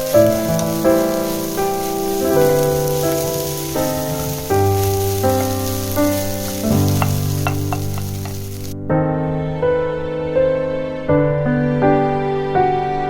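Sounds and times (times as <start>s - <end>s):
rice sizzling in a pan: 0.0s - 8.8s
keyboard chords music: 0.0s - 13.0s.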